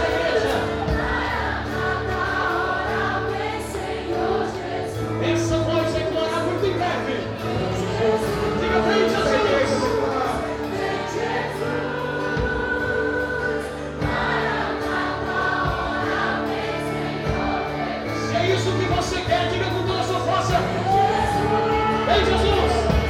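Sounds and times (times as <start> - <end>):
band playing worship music: 0.0 - 23.0
voices singing together: 0.0 - 23.0.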